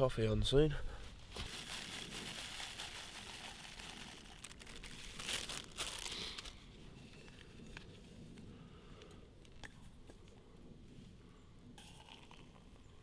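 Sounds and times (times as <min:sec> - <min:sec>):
plastic packaging crinkling: 0:01.3 - 0:06.6.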